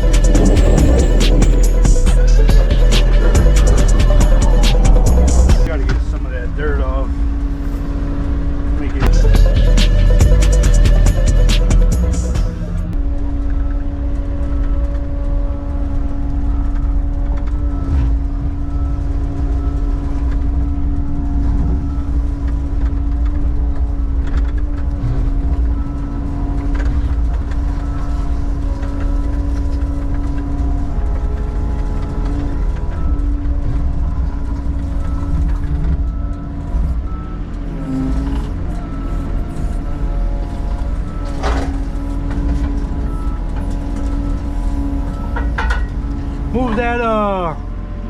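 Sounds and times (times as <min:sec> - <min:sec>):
background music with held notes: 0:00.0 - 0:05.7, 0:09.0 - 0:37.9
low engine rumble: 0:00.0 - 0:48.0.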